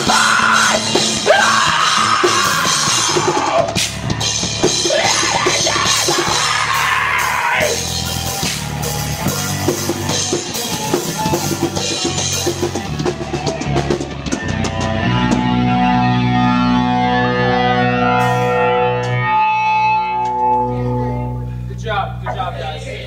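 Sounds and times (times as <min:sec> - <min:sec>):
busy drumming: 0:00.0 - 0:15.6
live rock band playing: 0:00.0 - 0:22.9
guitar chord ringing: 0:15.8 - 0:23.0.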